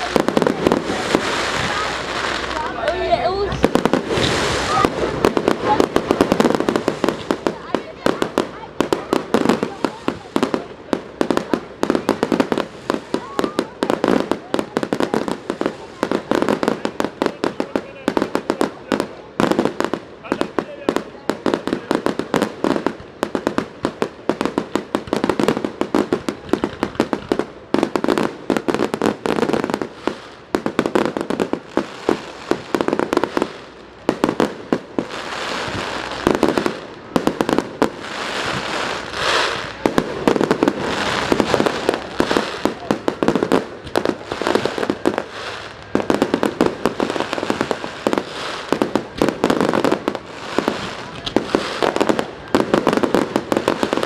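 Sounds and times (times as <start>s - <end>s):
fireworks bangs: 0.0s - 54.0s.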